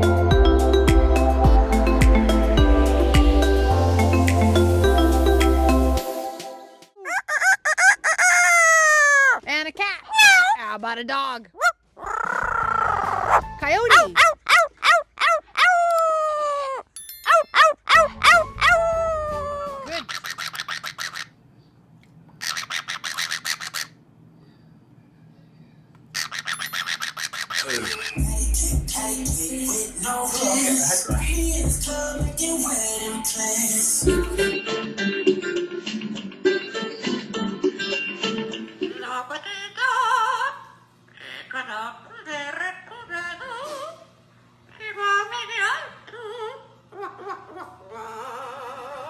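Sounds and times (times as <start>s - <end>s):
person warbling vocal sounds: 29.7s - 31.4s.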